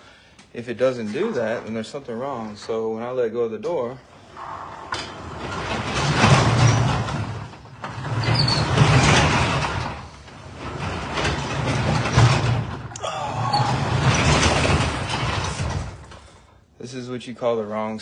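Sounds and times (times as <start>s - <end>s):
garage door rollers rumbling: 3.8s - 16.5s.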